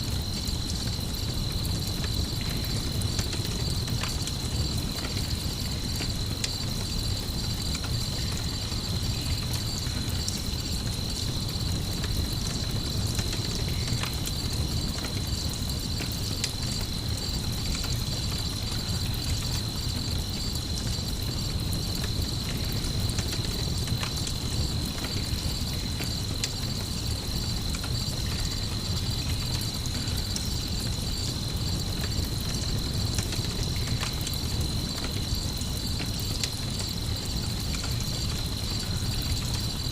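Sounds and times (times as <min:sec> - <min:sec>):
campfire crackling and popping: 0:00.0 - 0:39.9
constant low rumble: 0:00.0 - 0:39.9
crickets trilling: 0:00.0 - 0:39.9.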